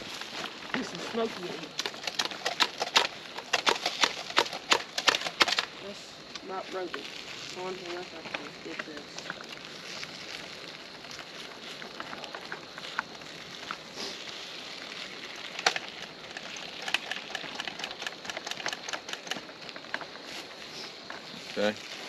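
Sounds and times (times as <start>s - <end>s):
campfire crackling: 0.0s - 22.0s
eggs sizzling in a skillet: 5.8s - 17.0s.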